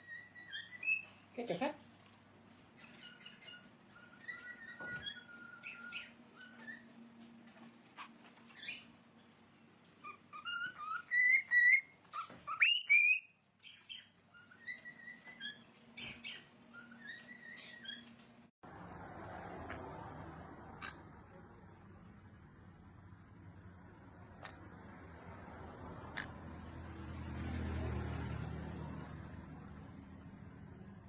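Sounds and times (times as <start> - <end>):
parrot whistling and chirping: 0.0 - 1.2, 2.8 - 6.9, 10.0 - 18.2.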